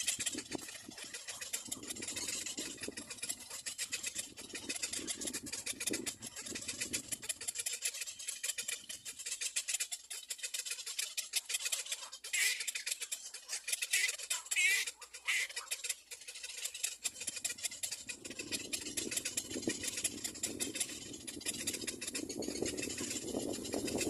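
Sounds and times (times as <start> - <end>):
birds rasping chatter: 0.0 - 24.0
high-pitched bird calls: 0.0 - 24.0.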